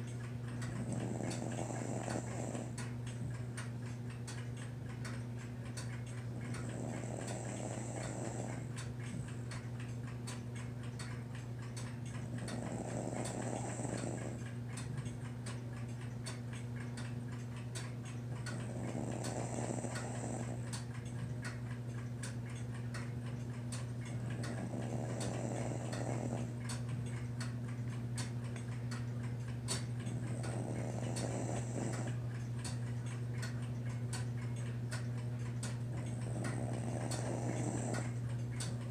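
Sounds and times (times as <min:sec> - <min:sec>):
regular ticking: 0:00.0 - 0:38.9
pet snoring: 0:00.6 - 0:03.2, 0:06.3 - 0:09.6, 0:12.2 - 0:14.6, 0:18.5 - 0:20.9, 0:24.1 - 0:26.8, 0:29.7 - 0:32.3, 0:35.9 - 0:38.2.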